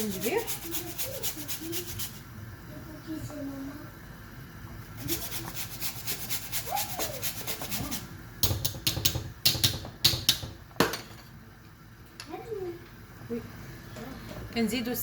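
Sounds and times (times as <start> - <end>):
ginger rasping on a grater: 0.0 - 2.2, 5.0 - 8.1.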